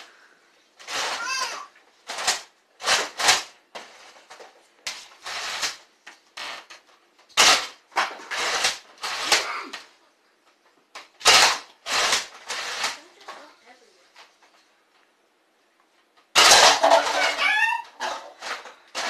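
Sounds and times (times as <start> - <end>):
toy blaster firing: 0.8 - 3.5, 7.4 - 9.5, 11.2 - 13.0, 16.4 - 18.0.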